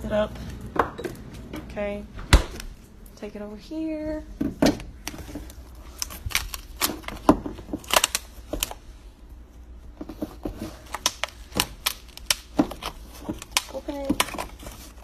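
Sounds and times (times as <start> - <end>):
plastic container crackling: 9.9 - 15.0.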